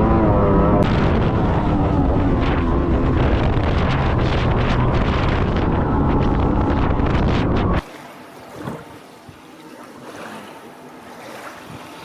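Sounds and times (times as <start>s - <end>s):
wind buffeting microphone: 0.0s - 7.8s
outboard motor: 0.0s - 12.0s.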